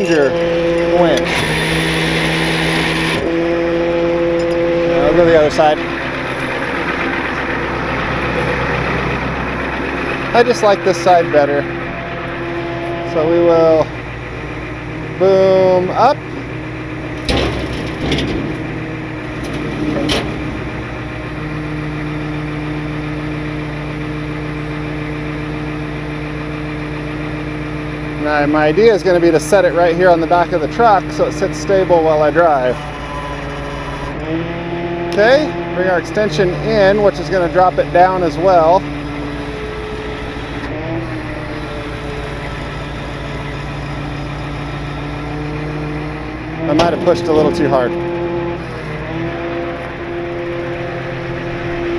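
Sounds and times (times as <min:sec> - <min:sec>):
steady higher hum: 0:00.0 - 0:24.1, 0:38.2 - 0:51.9
hydraulic whine: 0:00.0 - 0:51.9
truck engine running: 0:00.0 - 0:51.9
metallic knocks: 0:17.1 - 0:21.3.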